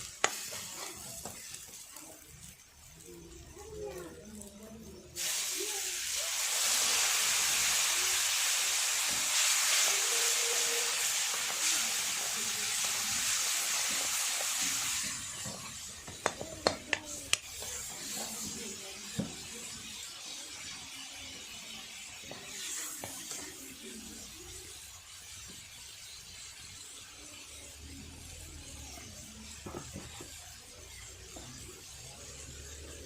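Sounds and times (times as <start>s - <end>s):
food sizzling in hot oil: 0.0s - 33.0s
stirring clicks in pan: 0.2s - 1.8s.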